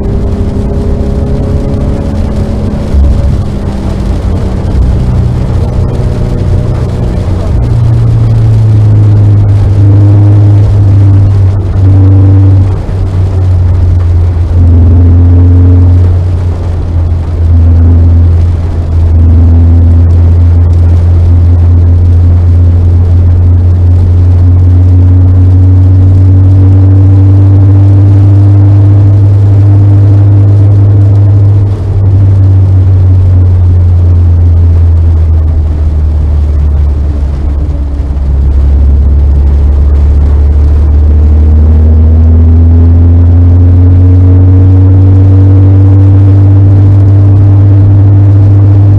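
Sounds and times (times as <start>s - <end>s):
car engine pulling hard: 0.0s - 48.9s.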